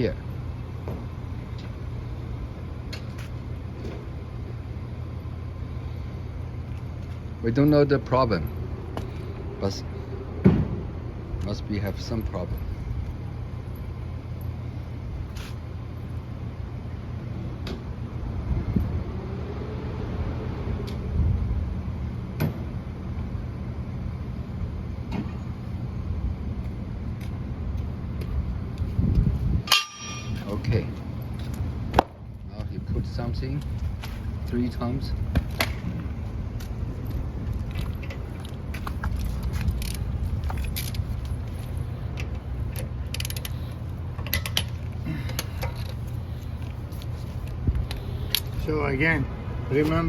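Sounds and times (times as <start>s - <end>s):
vehicle engine rumble: 0.0s - 50.0s
hand tools ratcheting: 37.8s - 46.1s.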